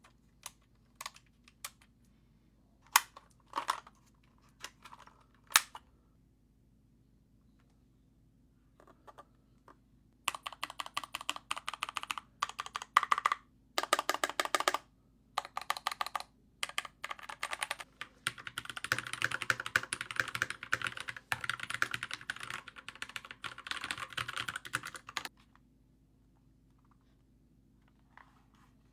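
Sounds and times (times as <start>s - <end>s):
mechanical keyboard typing: 0.4s - 1.8s, 10.3s - 14.8s, 15.4s - 25.3s.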